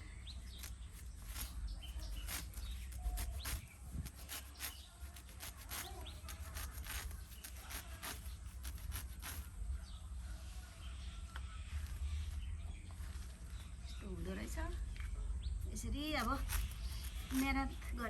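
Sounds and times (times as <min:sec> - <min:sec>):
sickle cutting grass: 0:00.4 - 0:09.7, 0:16.0 - 0:18.0.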